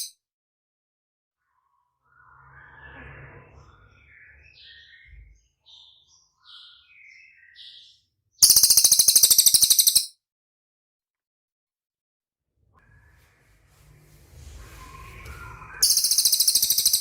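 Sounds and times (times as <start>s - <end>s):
faint bird chirps: 1.4s - 10.1s, 13.1s - 17.0s
bird harsh rattle: 15.8s - 17.0s.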